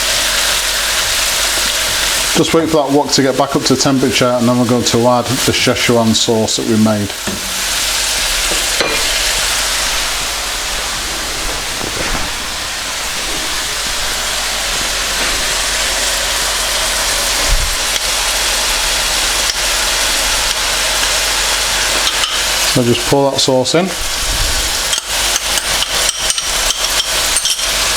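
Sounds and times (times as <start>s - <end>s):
food sizzling in a wok: 0.0s - 27.9s.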